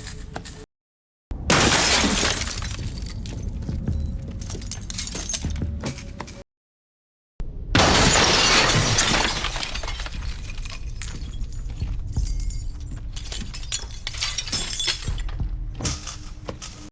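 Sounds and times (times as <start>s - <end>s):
window pane smashing: 1.5s - 3.6s, 7.8s - 10.3s
glass shards tinkling: 1.6s - 6.4s, 12.2s - 15.3s.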